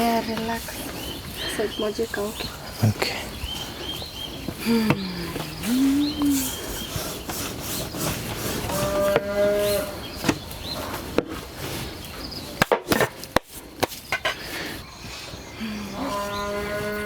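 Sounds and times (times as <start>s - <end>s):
cow mooing: 8.7s - 10.0s, 15.8s - 17.0s.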